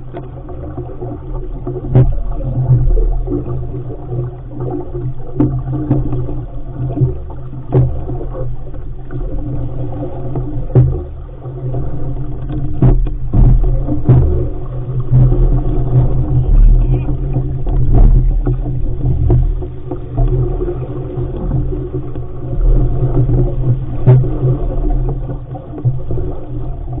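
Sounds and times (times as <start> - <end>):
water rushing along hull: 0.0 - 27.0
wind buffeting microphone: 12.2 - 27.0.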